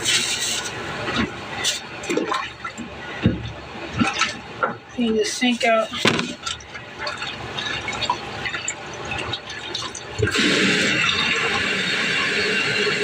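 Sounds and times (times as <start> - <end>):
water splashing in a sink: 0.0 - 13.0
faucet running full stream: 6.4 - 13.0.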